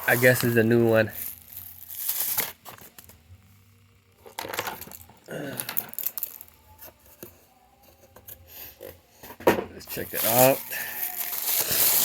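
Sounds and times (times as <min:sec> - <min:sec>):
packaging crinkling: 0:00.0 - 0:03.2, 0:10.1 - 0:12.0.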